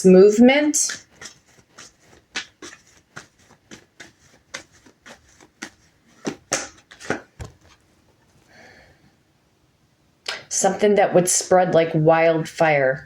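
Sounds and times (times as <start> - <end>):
cards being shuffled: 0.8 - 8.6
card slaps: 1.2 - 7.8.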